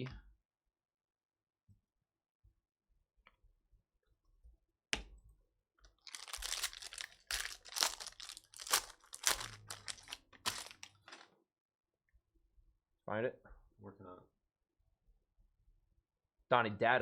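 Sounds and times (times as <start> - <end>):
plastic wrappers tearing and crinkling: 6.0 - 11.2.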